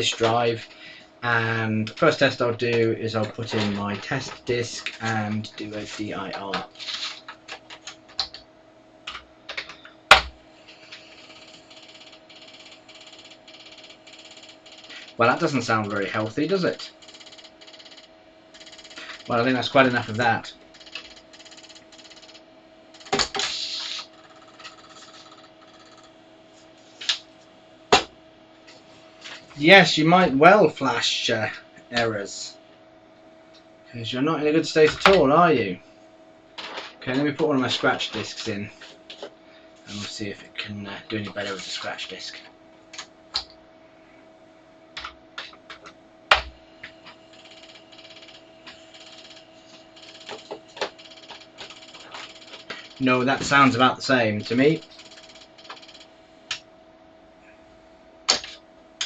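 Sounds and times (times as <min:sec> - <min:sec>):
faint steady hum: 0:00.0 - 0:59.0
disk drive spinning with hiss: 0:09.0 - 0:32.5, 0:46.3 - 0:56.6.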